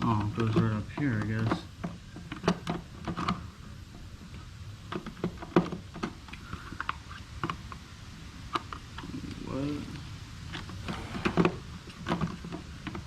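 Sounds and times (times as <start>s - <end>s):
plastic parts clicking and knocking: 0.2s - 3.4s.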